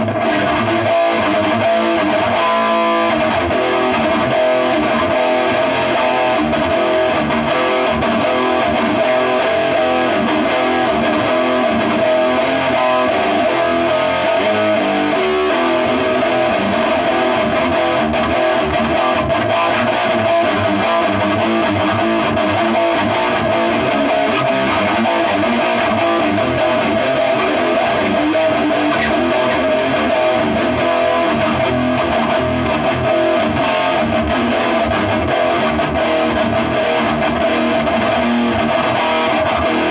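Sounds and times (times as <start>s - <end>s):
electric guitar playing: 0.0s - 39.9s.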